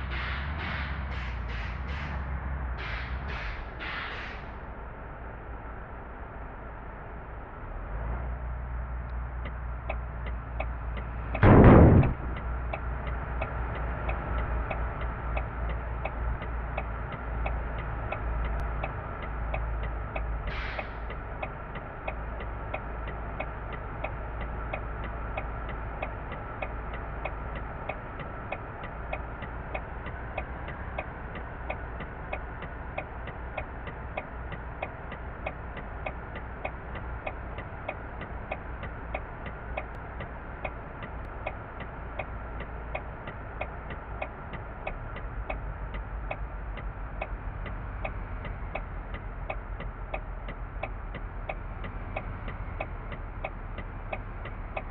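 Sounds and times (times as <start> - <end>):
low steady rumble: 4.4 - 54.9.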